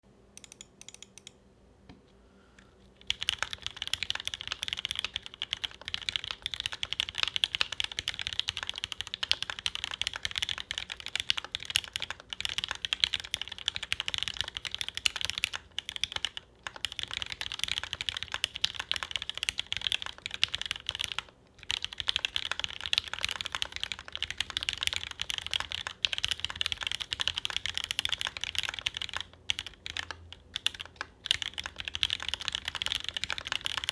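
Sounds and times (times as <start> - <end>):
fast mechanical keyboard typing: 0.4 - 1.3, 3.0 - 33.9.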